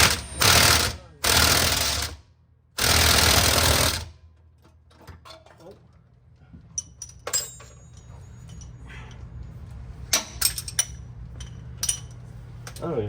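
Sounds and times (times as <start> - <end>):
metal tools clinking on exhaust: 4.6 - 5.9, 6.6 - 9.3, 10.1 - 12.9.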